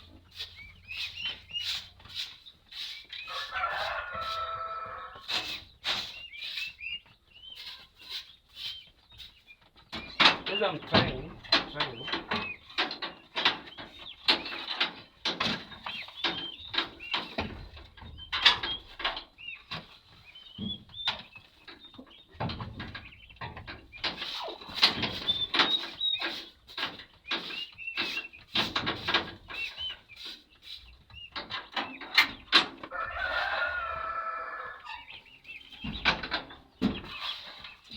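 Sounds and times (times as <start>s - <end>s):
chicks peeping: 0.0s - 37.9s
scraping and knocking: 7.5s - 34.1s.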